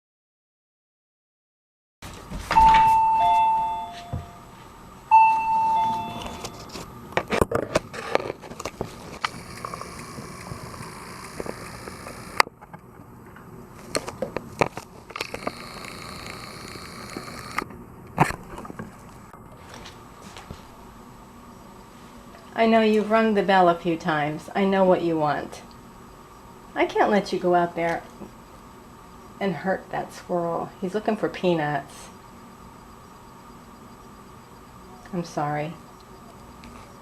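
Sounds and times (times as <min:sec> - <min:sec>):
doorbell ding-dong chime: 0:02.6 - 0:04.5, 0:05.1 - 0:06.6.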